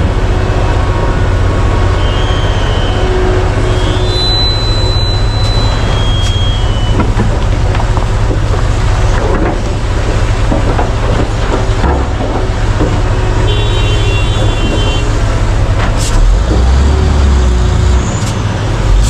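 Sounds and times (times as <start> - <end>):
heavy diesel machinery drone: 0.0 - 19.0
high steady tones: 2.4 - 6.9
clanks and knocks: 6.9 - 16.6.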